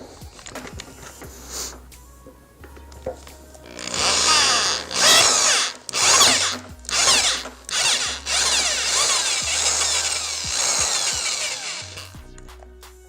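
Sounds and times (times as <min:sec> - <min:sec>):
electric drill boring into metal: 0:03.2 - 0:12.2.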